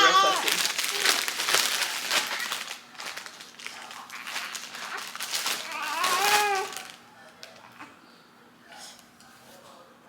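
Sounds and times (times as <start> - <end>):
baby crying: 0.0 - 1.1, 4.1 - 6.9.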